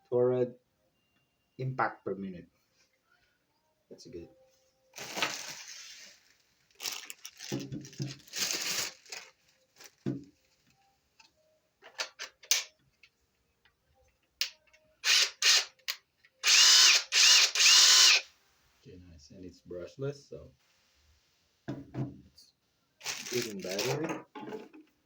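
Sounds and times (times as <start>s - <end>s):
impact driver motor whine: 16.4s - 18.2s.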